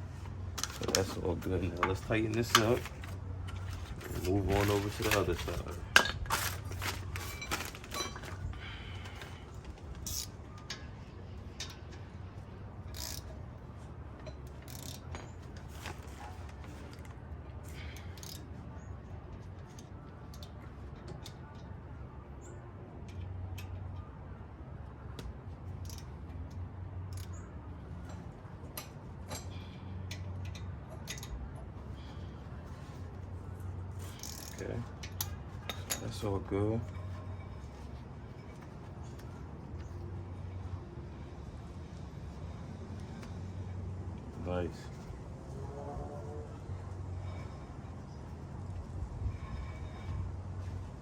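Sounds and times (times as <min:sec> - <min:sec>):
steady low hum: 0:00.0 - 0:51.0
ratchet wrench clicking: 0:10.0 - 0:10.4, 0:12.9 - 0:13.4, 0:14.2 - 0:15.2, 0:17.9 - 0:18.5, 0:25.8 - 0:26.2, 0:27.1 - 0:27.4, 0:28.8 - 0:31.4, 0:34.0 - 0:36.0.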